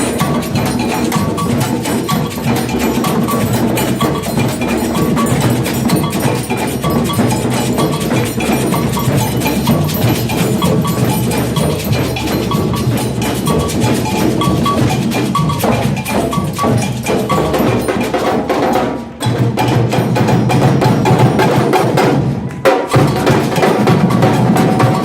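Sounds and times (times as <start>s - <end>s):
drum line with bells playing: 0.0s - 25.0s.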